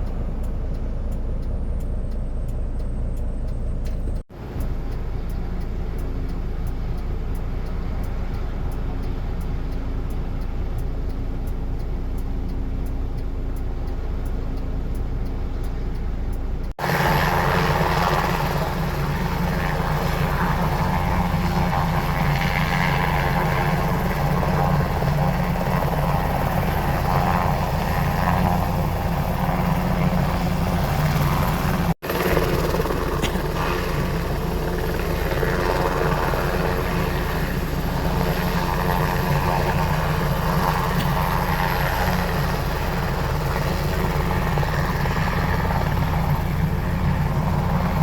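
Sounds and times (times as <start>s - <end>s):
aircraft engine running: 0.0s - 48.0s
low hum: 0.0s - 48.0s.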